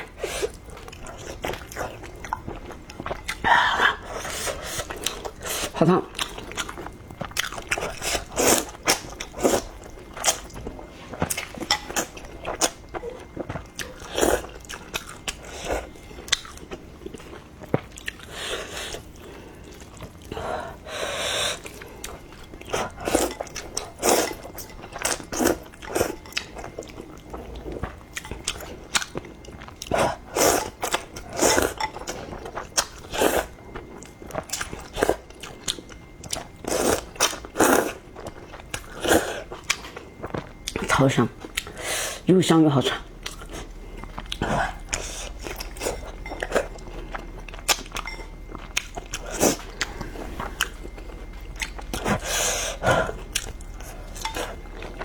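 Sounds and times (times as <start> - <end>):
chewing and biting: 0.0 - 20.4, 43.0 - 55.0.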